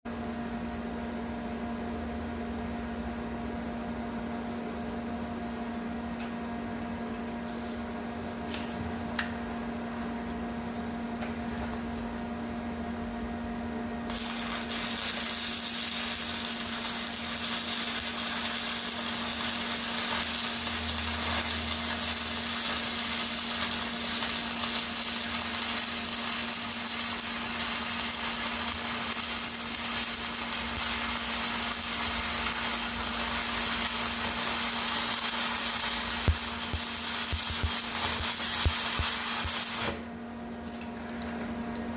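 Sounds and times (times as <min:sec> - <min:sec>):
electrical hum: 0:00.1 - 0:41.9
welding arc crackling and hissing: 0:14.1 - 0:40.0.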